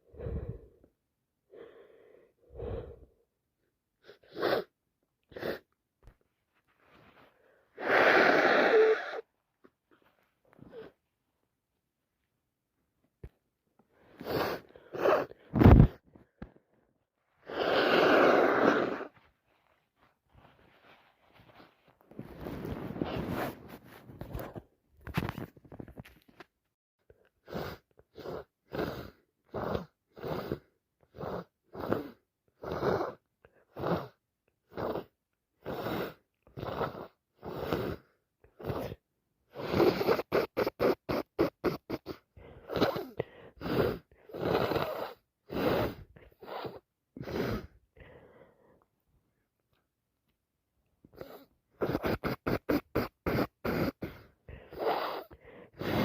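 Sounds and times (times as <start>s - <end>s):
person sniffling: 6.9s - 9.3s, 14.0s - 16.0s, 17.4s - 19.3s, 33.8s - 48.6s, 51.1s - 56.0s.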